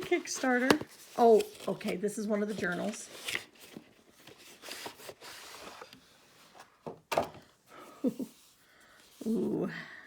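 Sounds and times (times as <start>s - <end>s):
packaging rustling: 0.0s - 6.0s.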